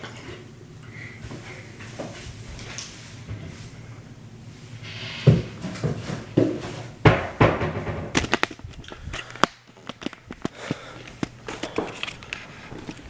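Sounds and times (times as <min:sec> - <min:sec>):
objects knocking and rattling: 0:05.3 - 0:09.0.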